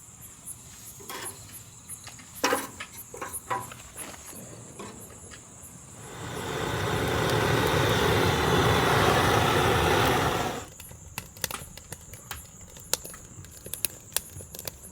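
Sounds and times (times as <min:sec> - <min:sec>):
burning firewood crackling: 0:03.7 - 0:14.9
loud rushing noise: 0:06.0 - 0:10.7.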